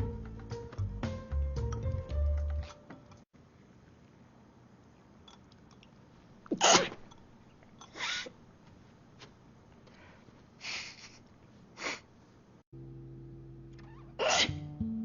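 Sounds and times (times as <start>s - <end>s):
person sneezing: 6.6s - 7.0s, 14.2s - 14.6s.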